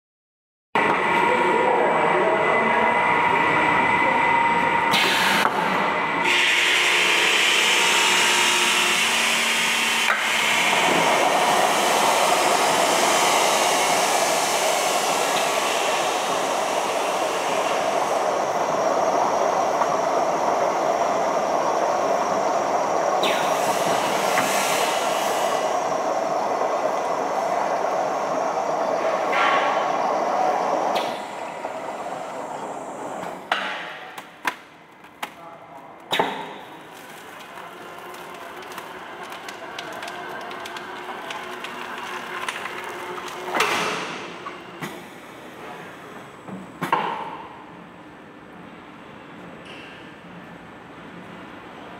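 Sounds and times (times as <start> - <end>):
packaging machine running: 4.8 - 18.8, 36.6 - 44.7.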